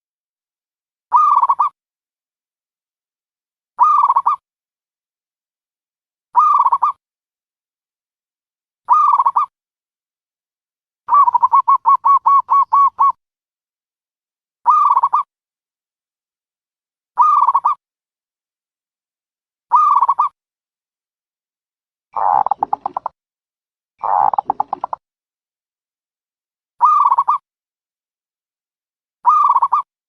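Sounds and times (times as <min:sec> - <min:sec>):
dove calling: 0:03.8 - 0:04.4, 0:06.4 - 0:07.0, 0:11.1 - 0:13.2, 0:14.7 - 0:15.3, 0:22.2 - 0:23.1, 0:24.0 - 0:25.0, 0:29.3 - 0:29.9.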